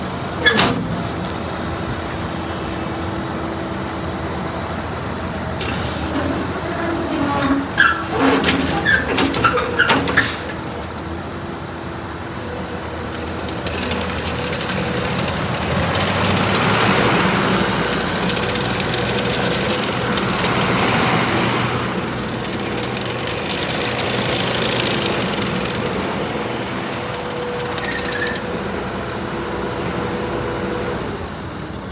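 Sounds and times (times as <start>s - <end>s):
diesel engine running: 0.0s - 31.9s
metallic clanks and knocks: 5.6s - 11.0s.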